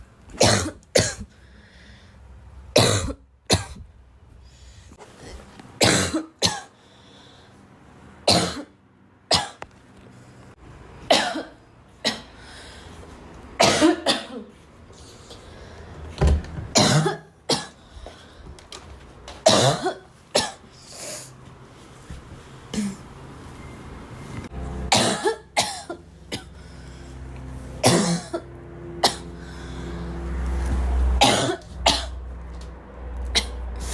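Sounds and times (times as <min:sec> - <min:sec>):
girl coughing: 0:00.4 - 0:01.3, 0:02.8 - 0:03.8, 0:11.1 - 0:12.3, 0:13.6 - 0:14.5, 0:16.8 - 0:17.7, 0:19.5 - 0:20.6, 0:24.9 - 0:26.5, 0:27.8 - 0:28.4, 0:31.2 - 0:32.2.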